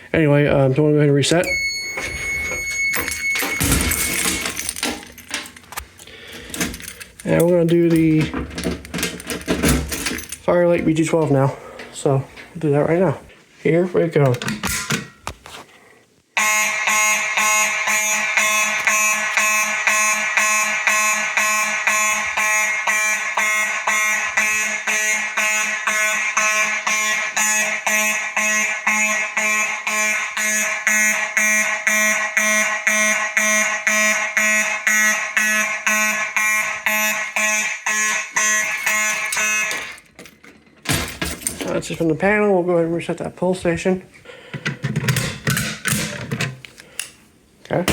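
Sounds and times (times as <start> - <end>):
pulsing buzzing fire alarm horns: 1.4 - 5.2, 16.4 - 40.1.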